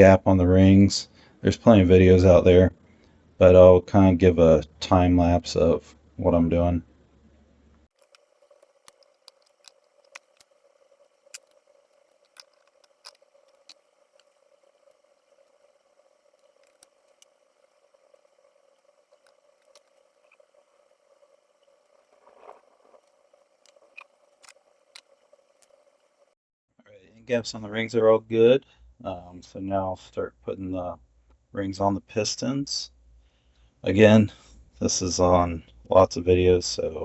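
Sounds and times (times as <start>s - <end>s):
faint steady hum: 0.0s - 26.4s
faint clicks: 7.9s - 26.4s.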